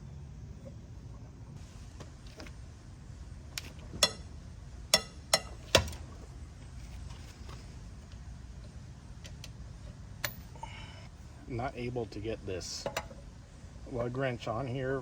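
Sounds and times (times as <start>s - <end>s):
lug wrench clinking on nuts: 4.0s - 4.3s, 4.9s - 6.0s.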